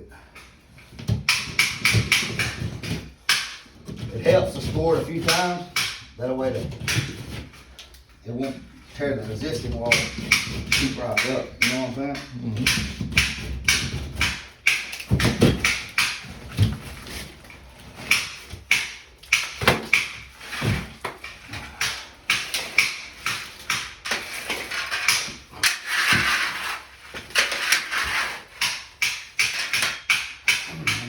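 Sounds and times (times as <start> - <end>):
blade scraping through drywall: 9.0 - 31.0.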